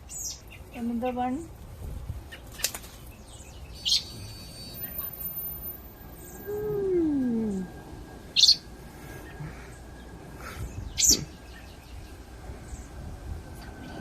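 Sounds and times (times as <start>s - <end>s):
sharp high bird chirps: 3.3s - 6.6s, 8.3s - 8.7s
low cry sliding downward: 6.2s - 8.2s.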